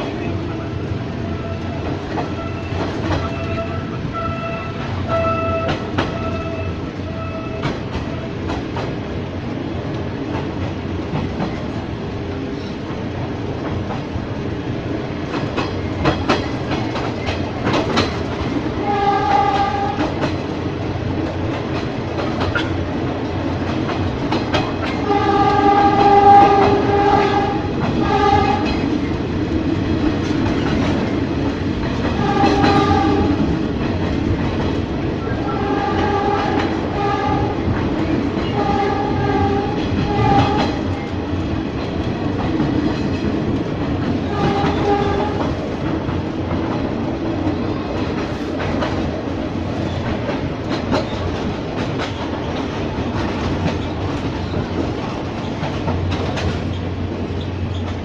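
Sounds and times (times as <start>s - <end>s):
rail-joint clicks: 0.0s - 9.1s, 12.4s - 14.2s, 15.0s - 58.0s
train rumbling on rails: 0.0s - 58.0s
train horn blasts: 0.5s - 8.4s, 18.8s - 20.1s, 25.0s - 28.8s, 32.1s - 33.4s, 35.3s - 37.6s, 38.4s - 40.8s, 44.2s - 45.5s.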